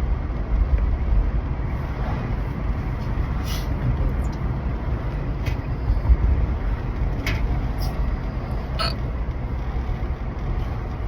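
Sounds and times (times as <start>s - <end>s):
person hiccuping: 8.7s - 9.0s.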